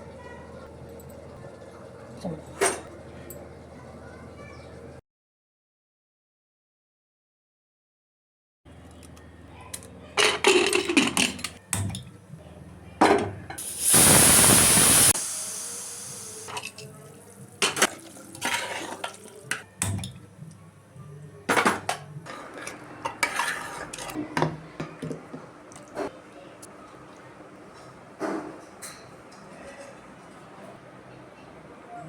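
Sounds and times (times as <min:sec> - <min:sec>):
food sizzling in hot oil: 0:13.6 - 0:19.3
metal spoon scraping a pot: 0:23.2 - 0:24.2.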